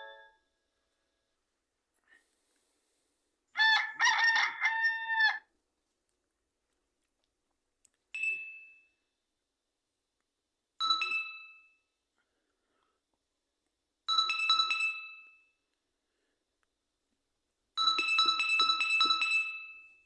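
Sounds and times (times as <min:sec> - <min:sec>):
mobile phone ringtone: 0:00.0 - 0:00.4, 0:17.8 - 0:20.0.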